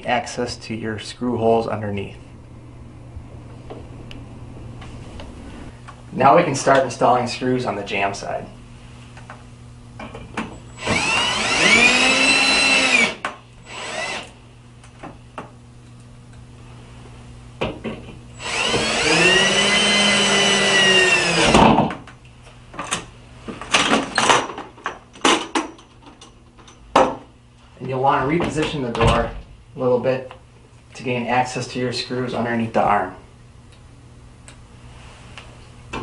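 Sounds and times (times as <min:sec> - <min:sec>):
power drill whining: 0:10.7 - 0:14.4, 0:18.3 - 0:21.6.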